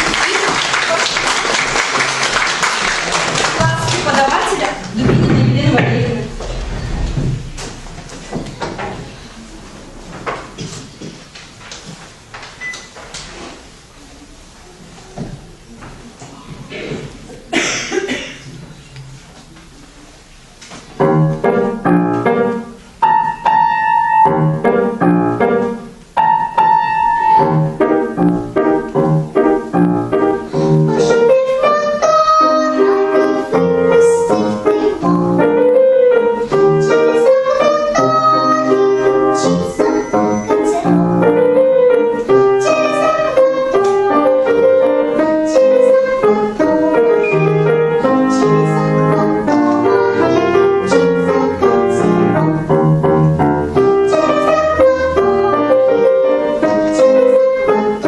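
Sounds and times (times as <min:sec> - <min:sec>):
piano playing: 0:00.9 - 0:10.0, 0:20.9 - 0:58.0
girl singing: 0:30.5 - 0:58.0.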